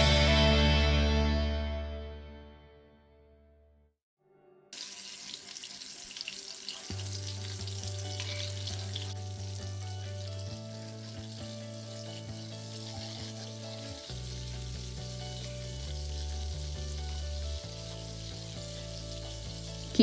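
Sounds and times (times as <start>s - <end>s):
meat sizzling in hot oil: 4.8s - 20.0s.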